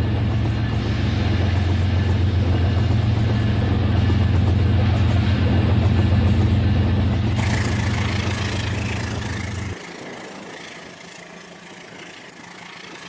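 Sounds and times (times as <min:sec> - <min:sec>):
toy train motor humming: 0:07.4 - 0:13.0.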